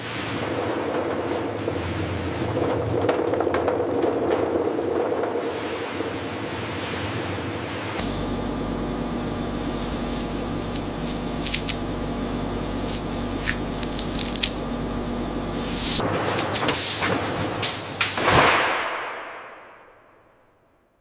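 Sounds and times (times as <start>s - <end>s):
processing machinery humming: 0.0s - 18.2s
wet spraying and squelching: 9.8s - 16.0s
loud hiss: 15.1s - 18.9s.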